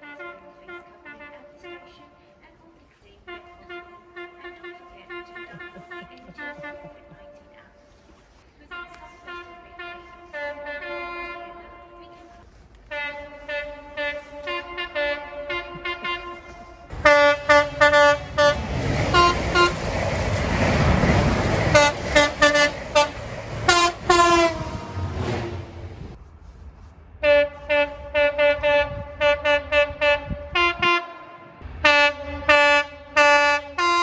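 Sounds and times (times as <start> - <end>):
train horn blasts: 0.0 - 2.3, 3.2 - 7.9, 8.6 - 19.9, 21.1 - 26.2, 27.2 - 34.0
train passing rumble: 0.0 - 34.0
short train horn toots: 3.2 - 7.2, 8.7 - 19.8, 21.7 - 26.1, 27.2 - 34.0.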